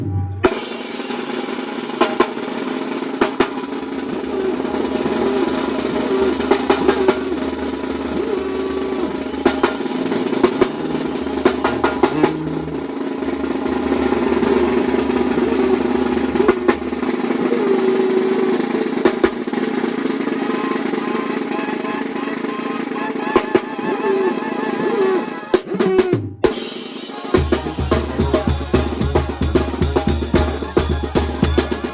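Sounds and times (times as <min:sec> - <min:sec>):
snare drum rolls and hits: 0:00.0 - 0:17.6, 0:18.3 - 0:23.9, 0:25.6 - 0:31.9
band playing drum-driven music: 0:00.0 - 0:31.9.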